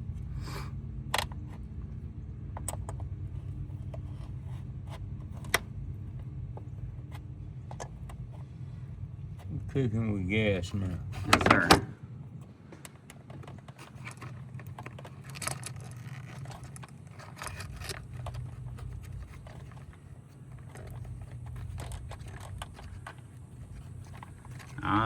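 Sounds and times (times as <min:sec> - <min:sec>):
steady low hum: 0:00.0 - 0:25.0
hand tools clicking and scraping: 0:12.8 - 0:25.0.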